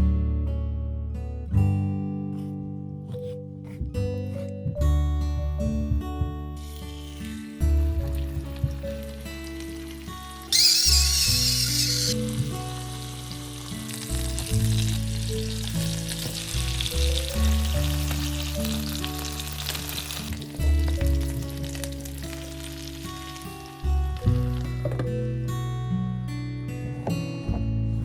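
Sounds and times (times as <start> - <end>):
instrumental music: 2.4 - 28.0.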